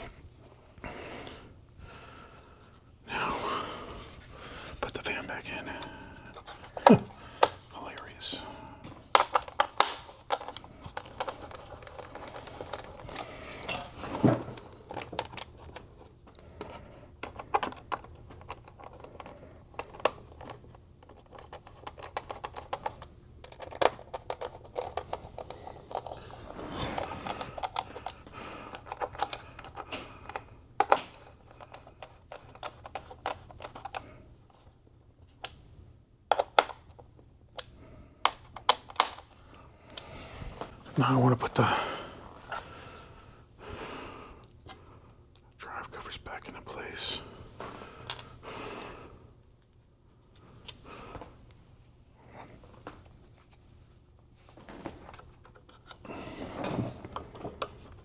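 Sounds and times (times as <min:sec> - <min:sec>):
small clicks of computer parts: 0:14.6 - 0:26.3, 0:27.0 - 0:34.7, 0:36.3 - 0:39.3.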